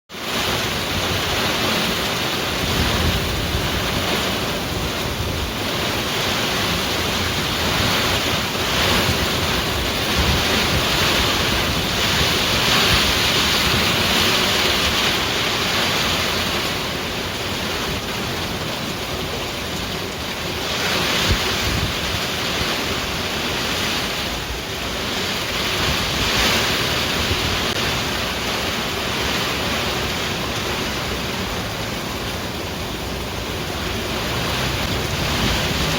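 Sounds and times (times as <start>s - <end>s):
heavy rain pouring: 0.1s - 35.9s
wind buffeting microphone: 0.4s - 35.9s.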